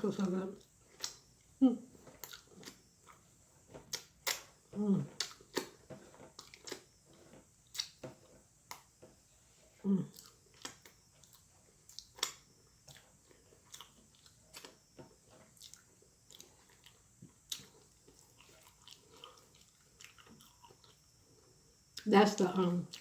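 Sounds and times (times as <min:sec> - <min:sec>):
wet mouth chewing clicks: 0:01.0 - 0:01.3, 0:07.7 - 0:08.0, 0:10.1 - 0:13.1.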